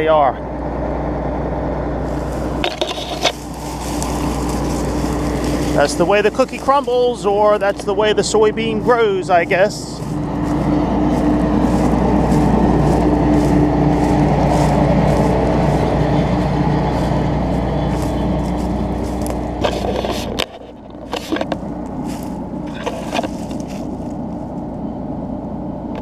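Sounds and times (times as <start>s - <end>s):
combine harvester running: 0.0s - 26.0s
scattered clicks and knocks: 2.6s - 3.4s.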